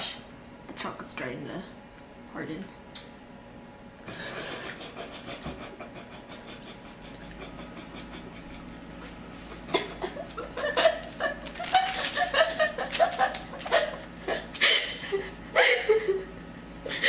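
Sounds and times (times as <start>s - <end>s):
people giggling: 4.1s - 17.0s.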